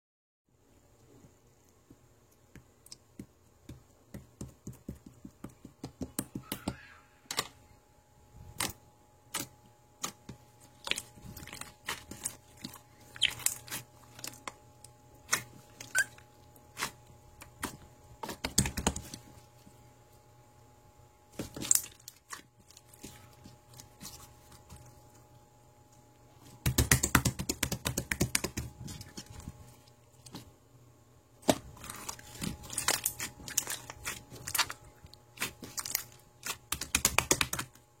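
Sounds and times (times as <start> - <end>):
crackling crunches: 8.5 - 19.3, 31.4 - 37.8.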